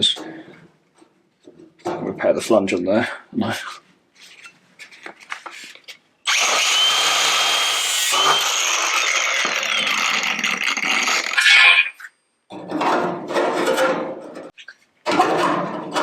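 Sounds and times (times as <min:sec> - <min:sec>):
power tool cutting steel: 0:06.3 - 0:11.8.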